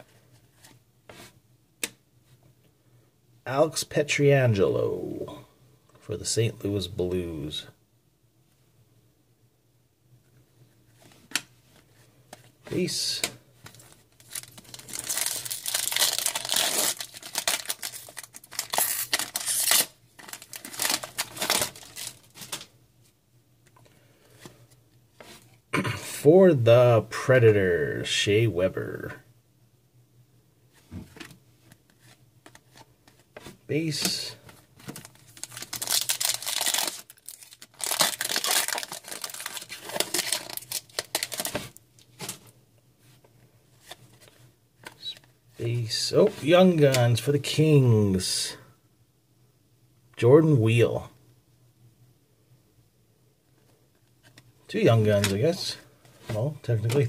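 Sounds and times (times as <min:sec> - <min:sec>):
cards rustling: 0:12.3 - 0:22.7, 0:31.1 - 0:42.5, 0:54.2 - 0:57.0
foil wrapper tearing and crinkling: 0:14.2 - 0:22.6, 0:35.0 - 0:41.8.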